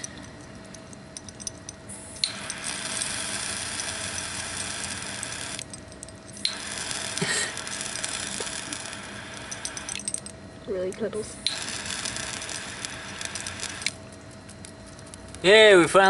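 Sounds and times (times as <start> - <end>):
torch flame hissing: 1.9 - 5.7, 6.3 - 10.0, 11.2 - 14.0
torch clicking alight: 2.2 - 15.5.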